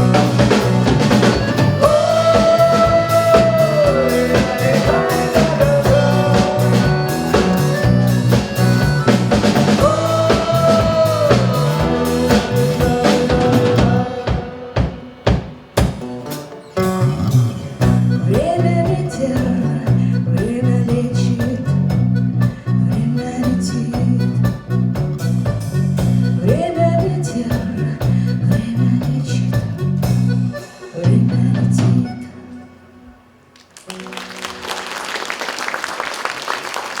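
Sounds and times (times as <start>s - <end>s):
live band playing: 0.0s - 32.7s, 33.5s - 37.0s
audience applauding: 33.6s - 37.0s.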